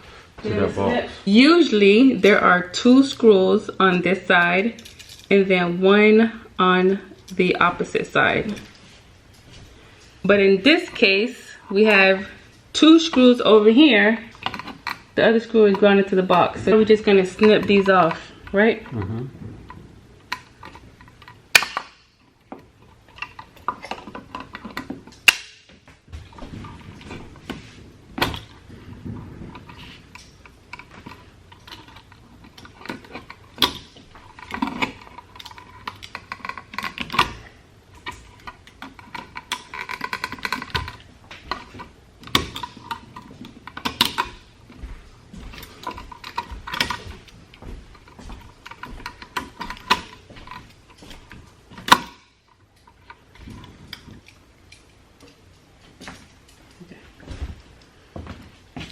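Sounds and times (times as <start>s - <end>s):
handling wire and tools: 1.4s - 58.9s.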